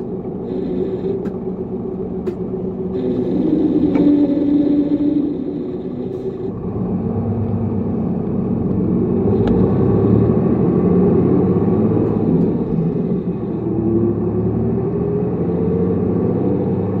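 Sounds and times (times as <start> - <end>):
bus engine drone: 0.0 - 17.0.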